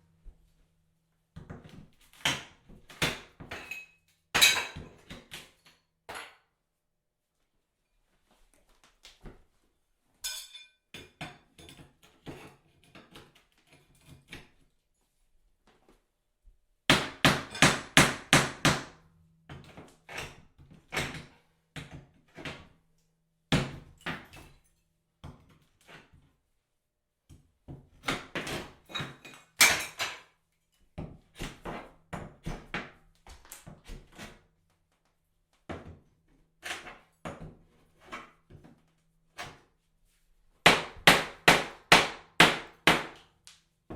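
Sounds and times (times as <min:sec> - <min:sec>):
hammer knocking down tiles: 0:16.9 - 0:20.2.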